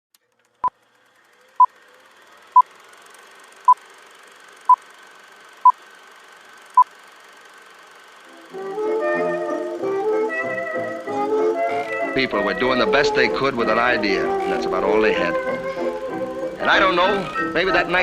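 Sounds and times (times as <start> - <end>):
music: 8.3 - 18.0.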